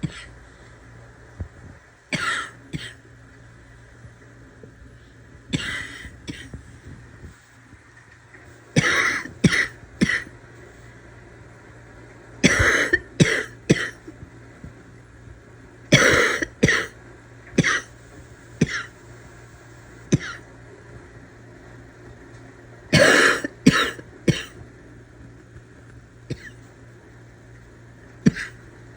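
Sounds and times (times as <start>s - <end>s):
person coughing harshly: 0.0s - 0.3s, 2.1s - 3.0s, 5.5s - 6.6s, 8.8s - 10.3s, 12.4s - 14.0s, 15.9s - 17.0s, 17.6s - 17.9s, 18.6s - 18.9s, 20.2s - 20.4s, 22.9s - 24.6s, 26.3s - 26.6s, 28.2s - 28.6s.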